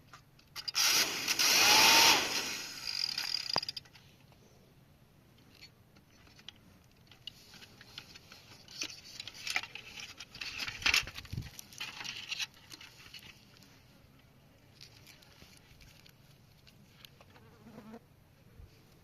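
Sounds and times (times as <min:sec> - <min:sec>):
plastic toy parts clicking and rattling: 0:00.1 - 0:00.9, 0:02.6 - 0:04.1, 0:05.4 - 0:13.7.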